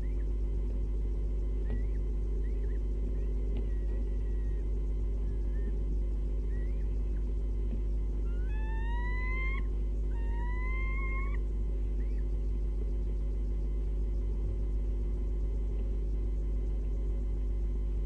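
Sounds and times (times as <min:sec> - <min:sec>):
electrical hum: 0:00.0 - 0:18.0
animal calling: 0:08.2 - 0:12.3.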